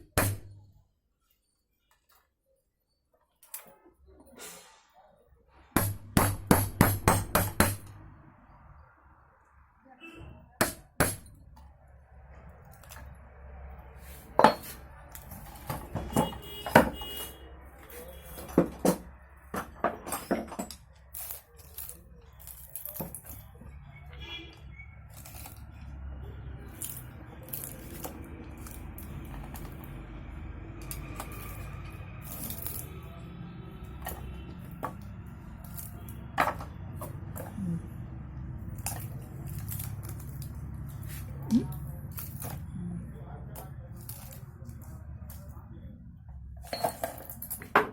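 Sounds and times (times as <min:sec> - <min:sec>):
metal tools clinking: 0:46.6 - 0:47.8.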